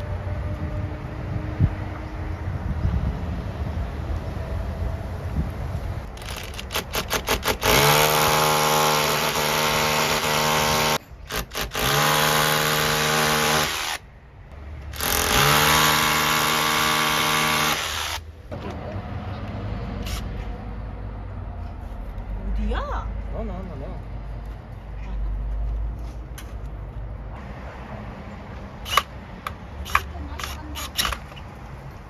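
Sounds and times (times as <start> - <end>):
electric drill whining: 6.2 - 14.0, 15.0 - 18.2.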